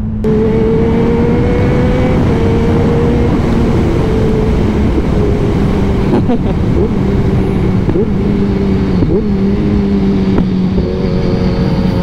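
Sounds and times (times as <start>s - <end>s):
motorcycle exhaust note: 0.0s - 12.0s
wind and road rush: 0.0s - 12.0s.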